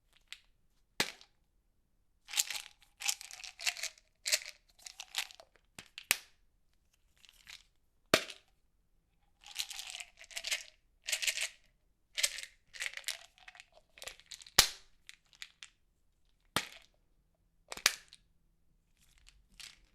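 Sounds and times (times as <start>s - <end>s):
pills rattling in plastic bottle: 2.3s - 6.0s, 9.4s - 11.6s, 12.2s - 15.7s, 19.0s - 19.9s.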